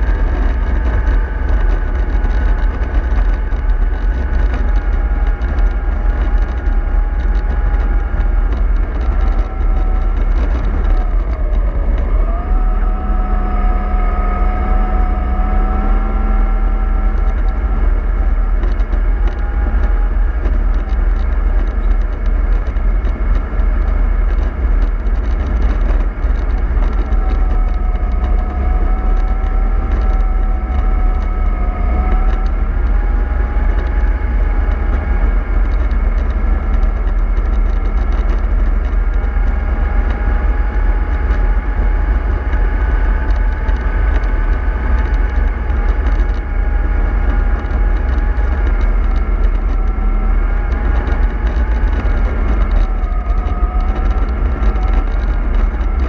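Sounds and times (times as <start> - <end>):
low rumble: 0.0 - 56.0.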